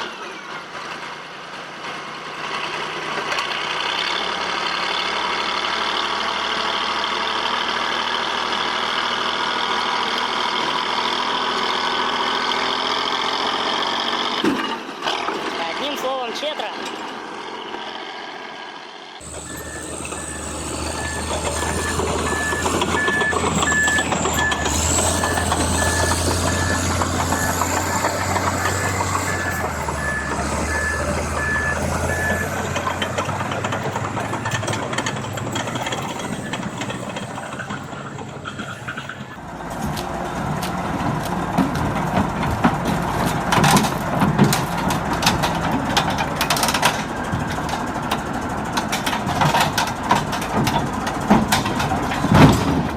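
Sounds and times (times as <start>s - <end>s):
heavy machine engine running: 0.0s - 15.8s, 17.1s - 52.9s
reversing alarm beeping: 19.2s - 37.8s
sharp metal knocks and clanks: 19.2s - 39.2s.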